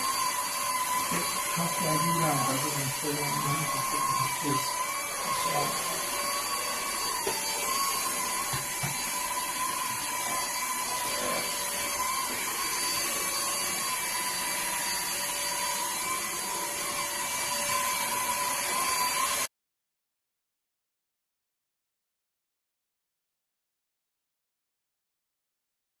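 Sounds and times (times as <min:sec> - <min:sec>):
cordless vacuum cleaner whining: 0:00.0 - 0:19.5.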